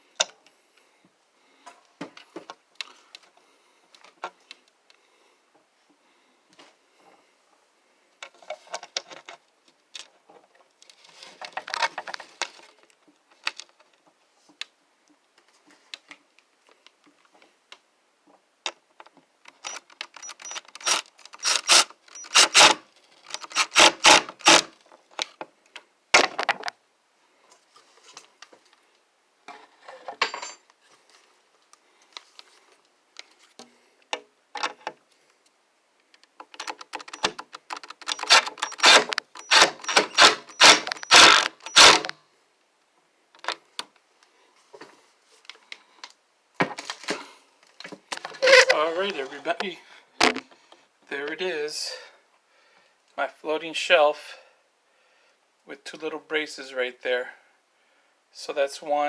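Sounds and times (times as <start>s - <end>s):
metallic clicks of hand tools: 19.5s - 24.7s, 36.4s - 42.2s.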